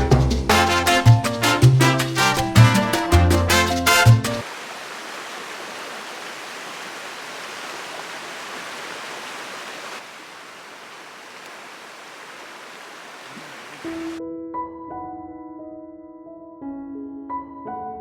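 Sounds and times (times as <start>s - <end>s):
waterfall rushing: 4.4s - 14.2s.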